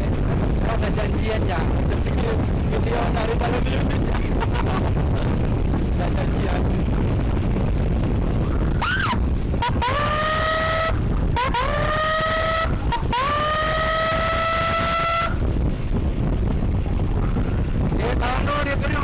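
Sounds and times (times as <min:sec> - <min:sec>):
motorcycle road noise: 0:00.0 - 0:19.0
wind noise: 0:00.0 - 0:19.0
electronic siren through loudspeaker: 0:08.8 - 0:15.4.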